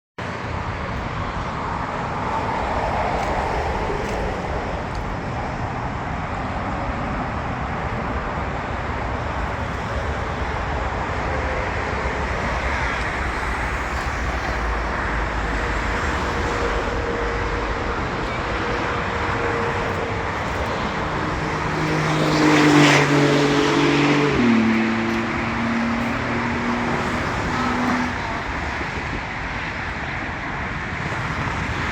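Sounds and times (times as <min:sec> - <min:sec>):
jet engines roaring: 0:00.2 - 0:31.9.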